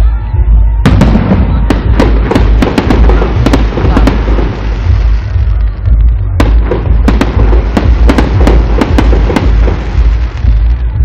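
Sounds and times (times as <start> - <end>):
fireworks booming: 0.8 - 11.0
sharp firework cracks: 0.9 - 10.9.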